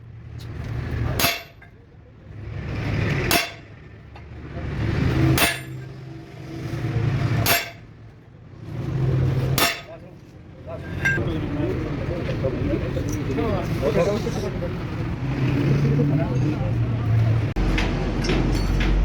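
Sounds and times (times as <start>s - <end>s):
heavy hammer blows on steel: 2.7s - 3.8s, 4.8s - 7.9s.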